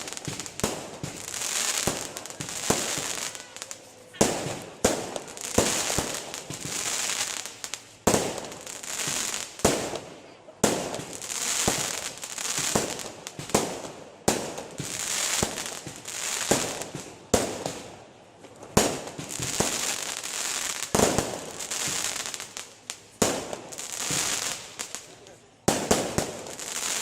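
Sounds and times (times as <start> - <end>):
firework shells bursting: 0.0 - 10.0
firework crackling hiss: 0.0 - 27.0.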